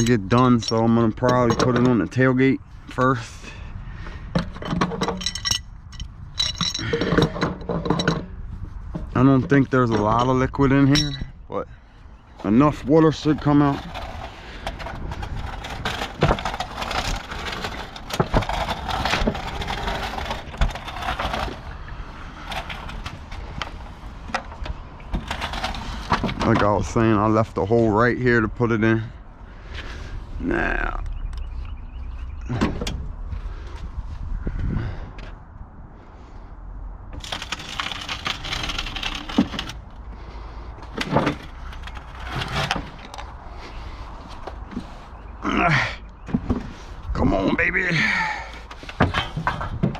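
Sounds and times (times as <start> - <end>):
metal tank clunking and scraping: 0.0 - 2.4, 4.1 - 11.4, 12.4 - 27.1, 40.8 - 45.0, 48.0 - 49.9.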